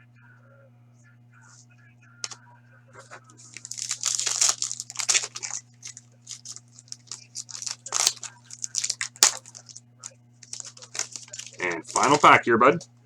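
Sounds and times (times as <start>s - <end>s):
faint electrical hum: 0.0s - 13.0s
cards being shuffled: 3.0s - 9.8s, 10.4s - 12.9s
foil wrappers crinkling and tearing: 3.0s - 9.8s, 10.4s - 12.9s.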